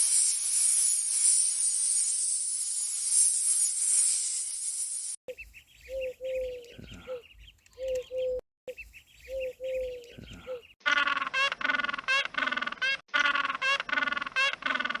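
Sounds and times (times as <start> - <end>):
high hissing jingling: 0.0 - 5.2
high bird chirping: 5.3 - 10.8.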